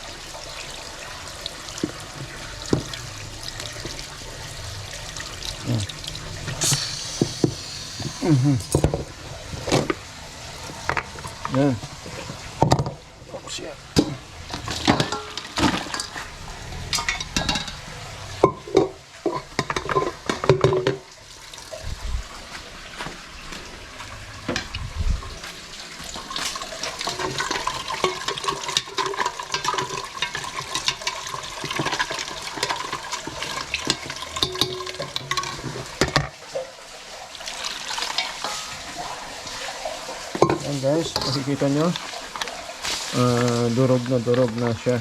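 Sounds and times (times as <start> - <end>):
broth sloshing in a pot: 0.0 - 45.0
bones knocking against metal pot: 14.0 - 16.2, 27.0 - 36.4, 40.3 - 42.5.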